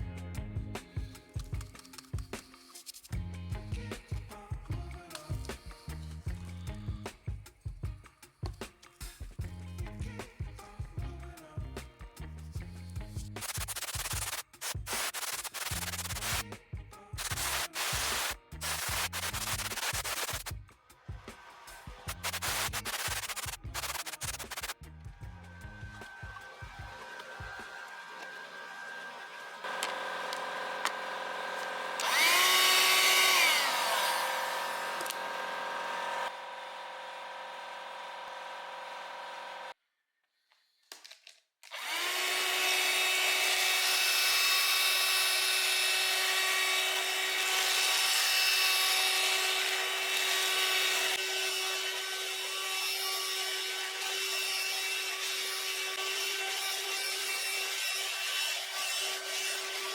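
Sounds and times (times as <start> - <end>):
handheld vacuum cleaner whine: 17.2 - 20.5, 26.0 - 39.8, 41.7 - 59.9.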